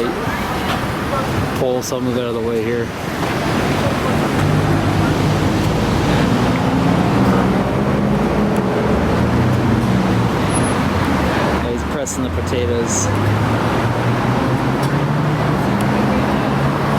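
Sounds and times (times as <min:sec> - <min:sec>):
car engines humming: 0:00.0 - 0:16.9
steady rush of noise: 0:00.0 - 0:16.9.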